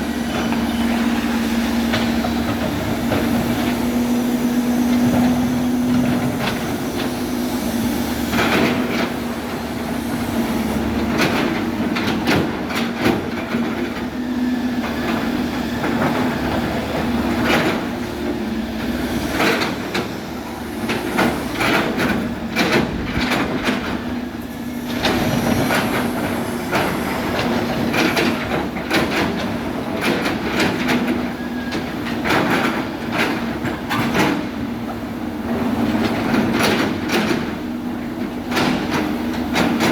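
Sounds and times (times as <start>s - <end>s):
diesel engine humming: 0.0s - 12.6s.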